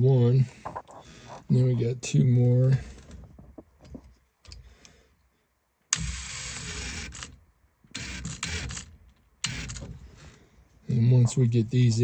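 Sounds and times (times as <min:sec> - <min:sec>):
screws being driven: 0:05.9 - 0:10.0.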